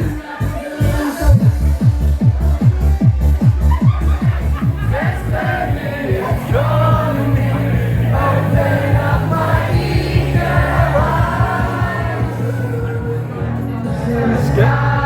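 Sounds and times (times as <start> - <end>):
pop dance music with vocals: 0.0 - 15.0.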